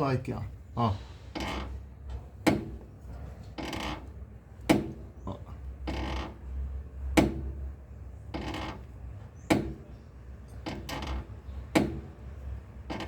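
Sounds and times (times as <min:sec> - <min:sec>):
car suspension creaking and knocking: 0:01.3 - 0:02.9, 0:03.5 - 0:05.0, 0:05.7 - 0:06.5, 0:08.3 - 0:09.7, 0:10.6 - 0:12.1, 0:12.8 - 0:13.0.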